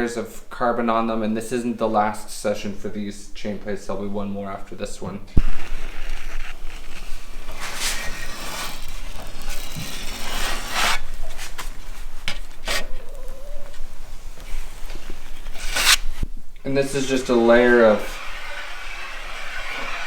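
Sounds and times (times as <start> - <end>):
hand scraping and rubbing surface: 5.4 - 20.0.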